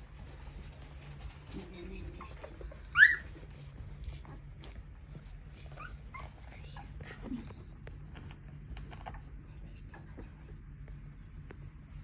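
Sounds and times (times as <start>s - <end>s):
puppies squeaking and whimpering: 2.2s - 4.5s, 5.2s - 7.3s.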